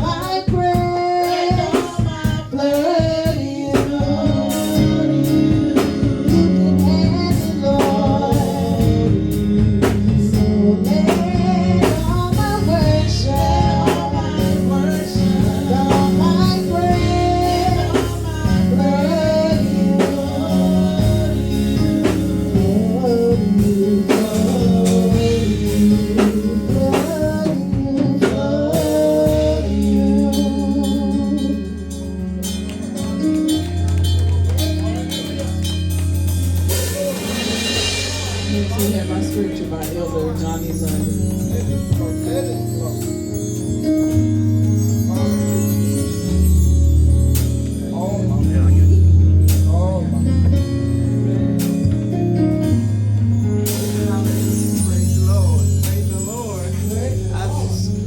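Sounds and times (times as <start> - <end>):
person singing: 0.0 - 32.2, 36.6 - 42.6
gospel band playing: 0.0 - 58.0.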